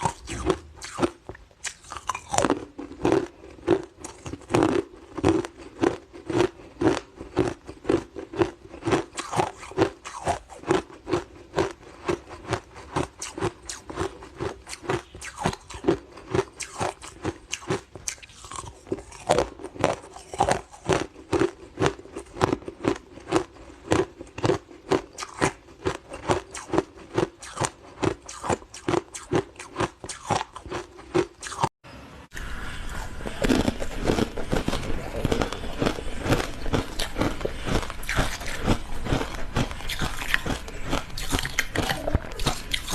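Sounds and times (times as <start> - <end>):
crunching frozen ice: 33.1 - 42.9.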